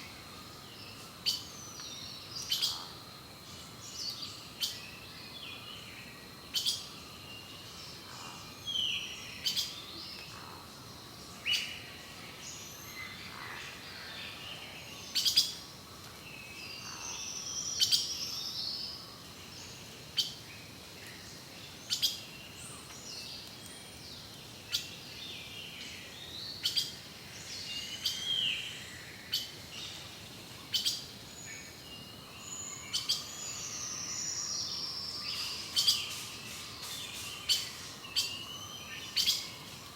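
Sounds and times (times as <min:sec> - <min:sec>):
songbirds calling and singing: 0:00.0 - 0:39.9.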